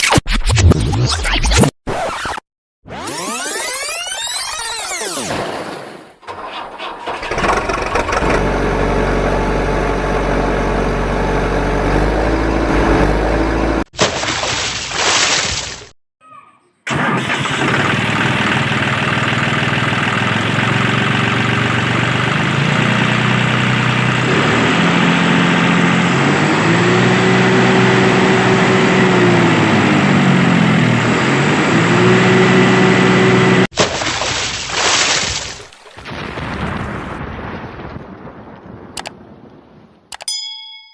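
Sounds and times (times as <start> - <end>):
vehicle engine revving: 7.0 - 13.9, 17.4 - 33.7.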